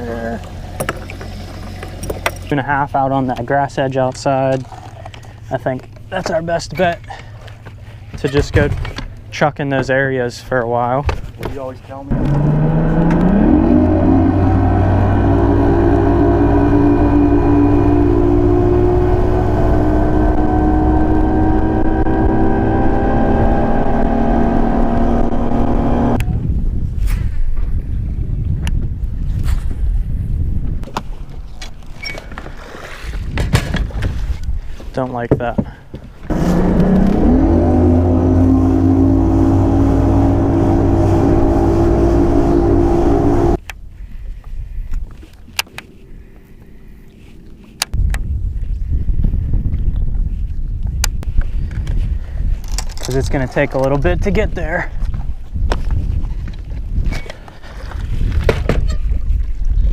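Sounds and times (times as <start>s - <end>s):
outboard motor running: 0.0s - 2.5s, 12.1s - 26.2s, 36.2s - 43.6s.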